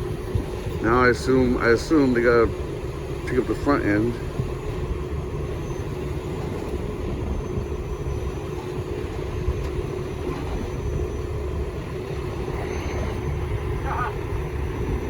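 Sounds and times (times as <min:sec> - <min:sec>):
diesel truck engines running: 0:00.0 - 0:15.0.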